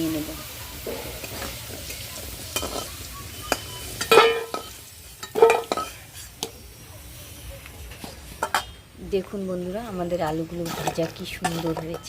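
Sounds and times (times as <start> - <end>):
potatoes sizzling in hot oil: 0.0 - 12.0
metal spatula scraping pan: 0.9 - 6.5, 7.9 - 8.8, 9.6 - 12.0.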